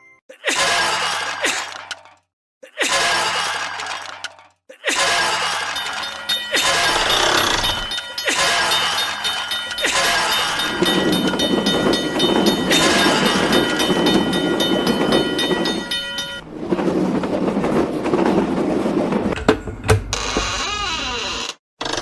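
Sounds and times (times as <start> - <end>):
level-crossing warning bell: 5.3 - 20.5
train running past: 5.6 - 20.5.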